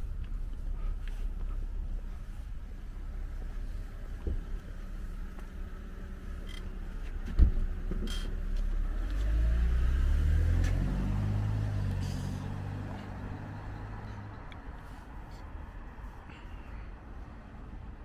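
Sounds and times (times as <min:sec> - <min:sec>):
car engine pulling away: 0:00.0 - 0:14.5.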